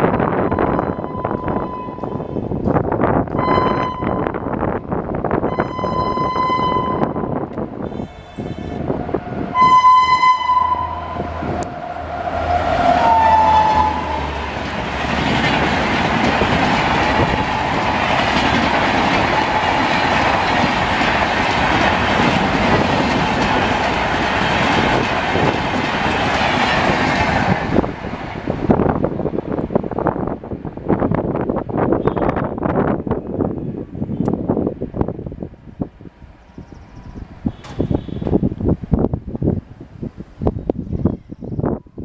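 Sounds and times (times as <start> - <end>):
train horn blasts: 0.4 - 2.4, 3.3 - 4.4, 5.5 - 14.5, 37.5 - 38.4
train coaches rattling past: 5.4 - 30.2.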